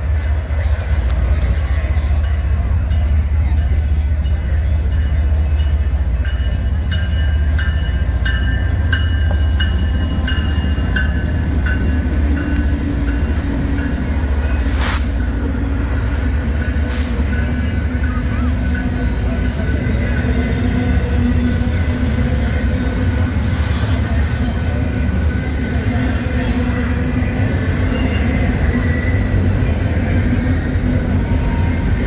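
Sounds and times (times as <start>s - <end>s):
train rumbling past: 0.0s - 32.0s
brief hiss: 14.6s - 15.2s.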